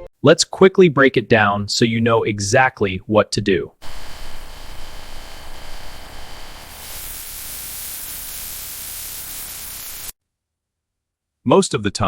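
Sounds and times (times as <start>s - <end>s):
static hiss: 3.8s - 10.2s.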